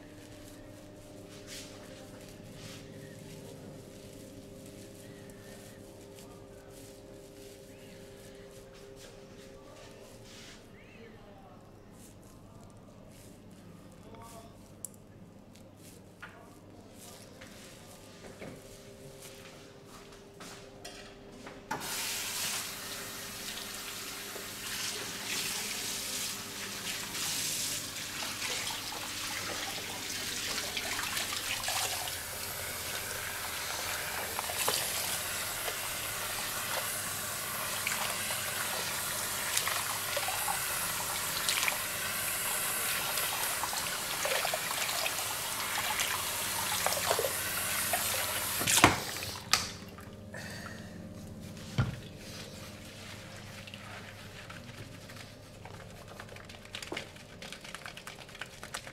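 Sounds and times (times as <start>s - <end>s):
running water splashing: 22.0s - 50.2s.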